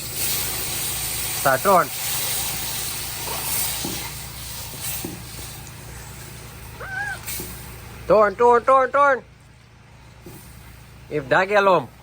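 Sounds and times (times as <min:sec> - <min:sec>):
food sizzling in a pot: 0:00.0 - 0:07.8.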